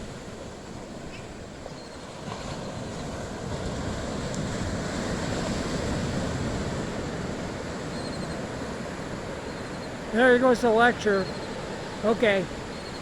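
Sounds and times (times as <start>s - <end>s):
wind on microphone: 0.0s - 9.8s
ocean surf washing onto beach: 0.0s - 13.0s.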